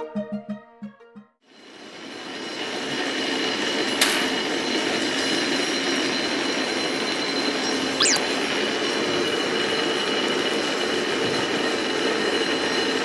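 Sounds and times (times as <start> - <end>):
sharp click: 8.0 - 8.2.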